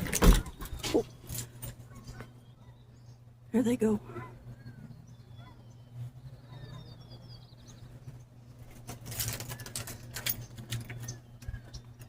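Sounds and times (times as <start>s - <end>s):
small birds chirping: 0.0s - 12.0s
sharp irregular clicks and rattles: 8.5s - 12.0s.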